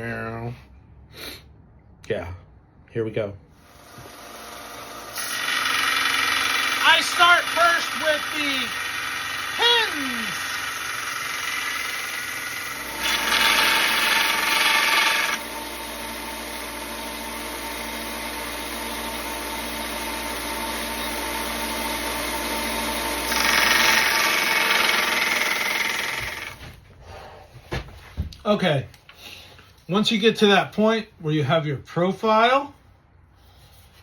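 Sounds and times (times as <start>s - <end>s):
belt grinder running: 3.7s - 26.6s.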